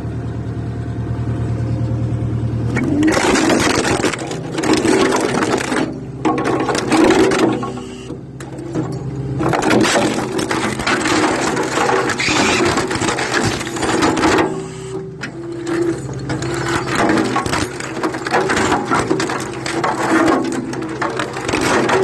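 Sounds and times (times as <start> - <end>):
small engine pull-start cranking: 12.2 - 13.3.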